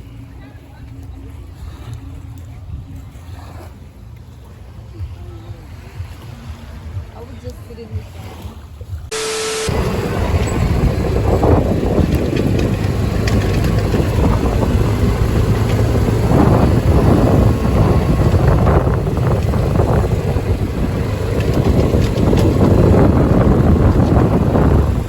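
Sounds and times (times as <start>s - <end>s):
low engine hum: 0.0s - 7.7s, 9.1s - 25.0s
wind buffeting microphone: 8.9s - 25.0s.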